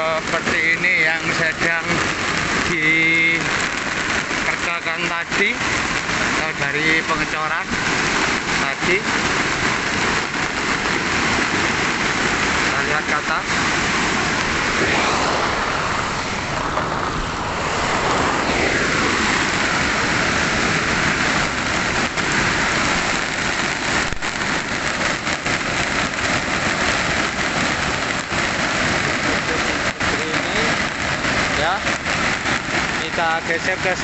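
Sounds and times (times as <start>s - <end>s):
heavy rain: 0.0s - 34.0s
rushing runoff water: 0.0s - 34.0s
vehicle passing: 14.0s - 20.1s.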